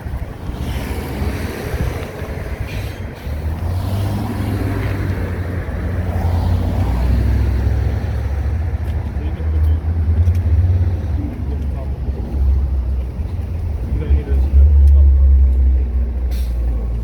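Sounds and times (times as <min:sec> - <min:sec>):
wind noise on microphone: 0:00.0 - 0:08.8
vehicle engine rumble: 0:00.0 - 0:17.0.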